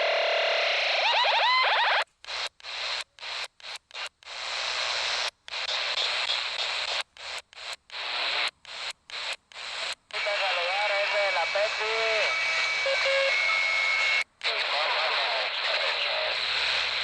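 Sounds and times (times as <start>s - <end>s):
radio static hiss: 0.0s - 17.0s
warbling distorted radio signal: 0.8s - 17.0s.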